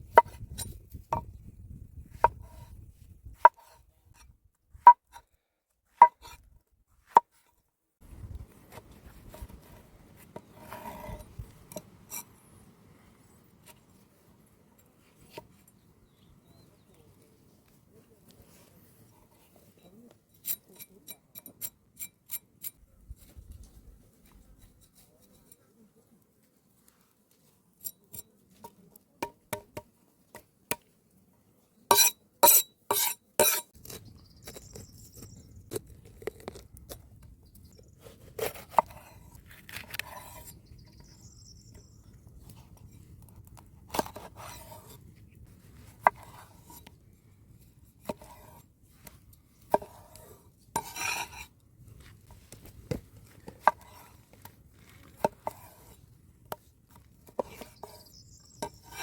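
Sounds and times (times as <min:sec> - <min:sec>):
utensils scraping: 0:19.3 - 0:22.8, 0:31.9 - 0:35.4, 0:43.9 - 0:45.0, 0:48.0 - 0:51.5, 0:53.5 - 0:56.0, 0:57.3 - 0:59.0
knife chopping on board: 0:57.4 - 0:58.0.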